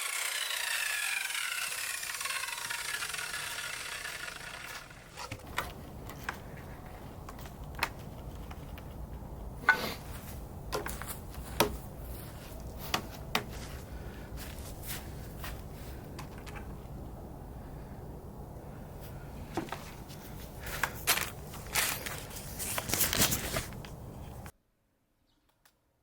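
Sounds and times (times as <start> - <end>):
power tool winding down: 0.0 - 5.2.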